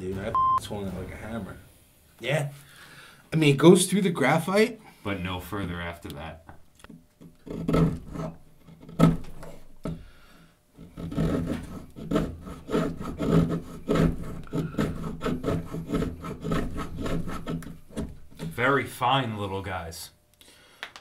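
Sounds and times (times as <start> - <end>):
knife rasping against wood: 7.4 - 9.6, 10.8 - 18.5.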